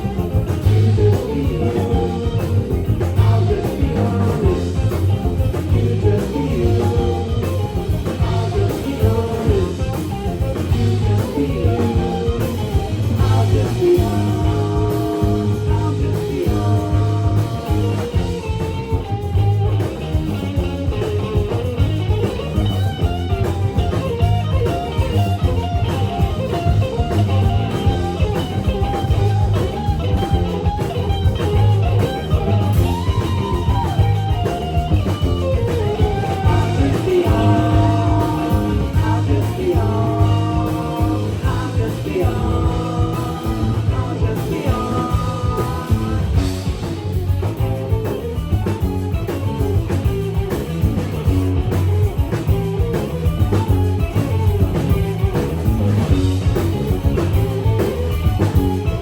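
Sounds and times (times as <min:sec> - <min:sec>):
person singing: 0:00.0 - 0:18.7, 0:35.5 - 0:46.9
live rock band playing: 0:00.0 - 0:59.0.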